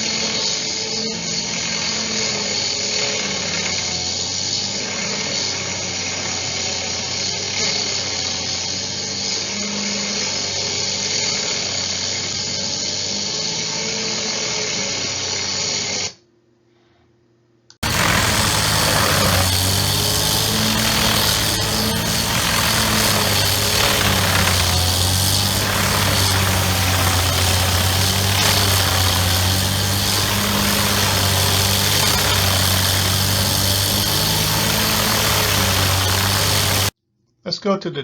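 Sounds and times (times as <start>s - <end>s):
heavy machinery engine drone: 17.8s - 36.9s
louder engine-driven machine running: 17.8s - 37.0s.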